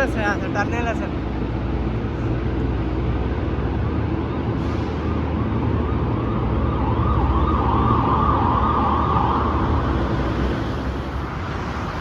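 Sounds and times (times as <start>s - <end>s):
traffic rumble in a tunnel: 0.0s - 12.0s
warbling siren: 5.5s - 12.0s.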